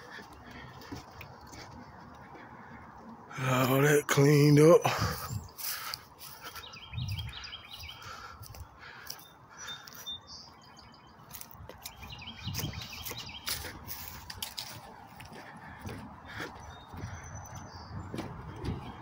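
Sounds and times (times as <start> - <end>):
songbirds chirping: 0.0 - 19.0
soft low thumps: 16.8 - 19.0.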